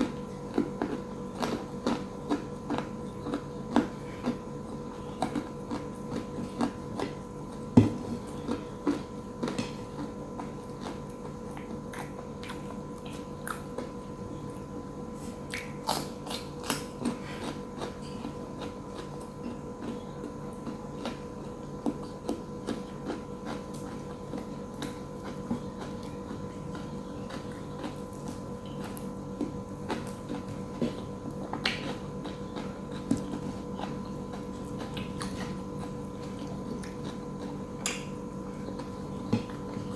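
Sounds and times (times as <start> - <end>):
chewing with clicks and crunches: 0.0 - 39.9
steady electrical hum: 0.0 - 39.9.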